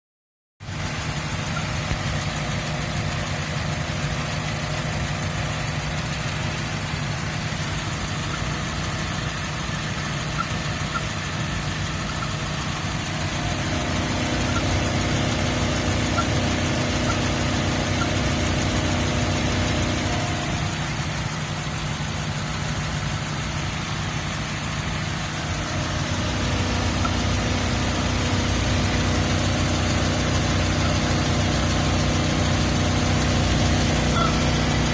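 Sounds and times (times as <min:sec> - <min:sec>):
car engine idling: 0:00.6 - 0:34.9.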